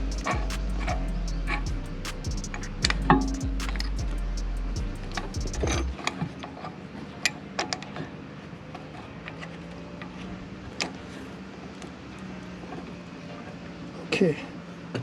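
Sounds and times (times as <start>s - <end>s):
low steady hum: 0.0s - 6.0s.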